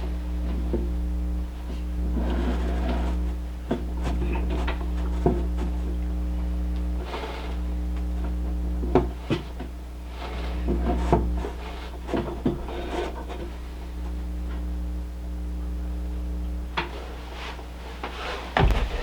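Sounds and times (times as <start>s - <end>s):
low electrical hum: 0.0s - 19.0s
wooden knocks and rubbing: 18.6s - 19.0s.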